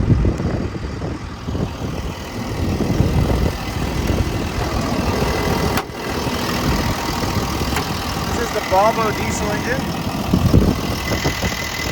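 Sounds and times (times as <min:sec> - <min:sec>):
excavator diesel engine idling: 0:00.1 - 0:11.9.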